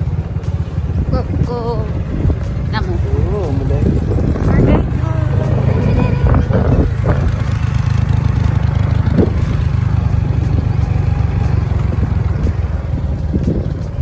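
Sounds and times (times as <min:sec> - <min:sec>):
vehicle engine drone: 0:00.0 - 0:14.0.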